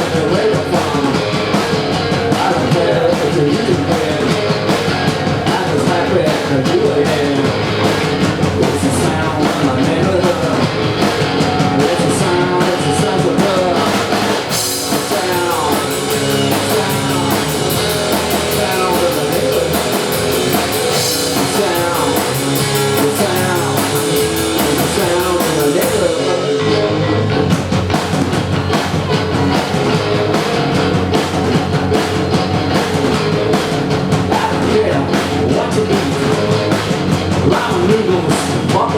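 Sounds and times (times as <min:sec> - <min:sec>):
punk rock band playing live: 0:00.0 - 0:38.9.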